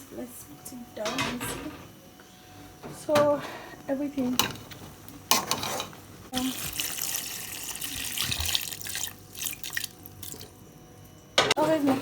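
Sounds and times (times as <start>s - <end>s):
soup bubbling and hissing: 5.6s - 10.6s.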